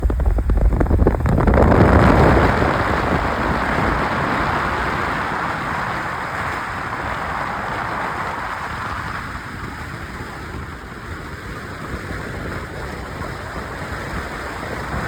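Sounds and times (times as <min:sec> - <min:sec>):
heavy rain falling: 0:00.0 - 0:10.8
wind buffeting microphone: 0:00.0 - 0:15.0.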